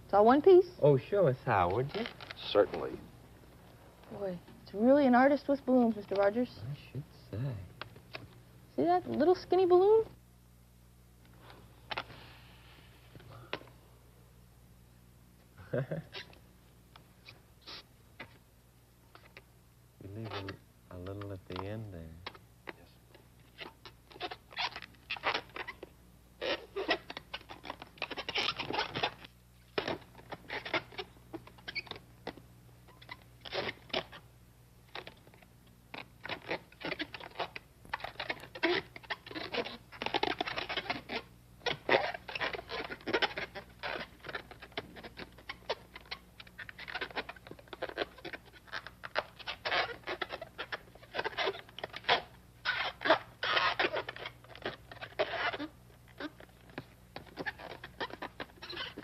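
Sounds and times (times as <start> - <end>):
balloon rubber squeaking: 0.2 - 3.1, 4.1 - 6.5, 11.9 - 12.2, 15.7 - 16.4, 17.2 - 18.4, 19.1 - 19.5, 20.1 - 59.0.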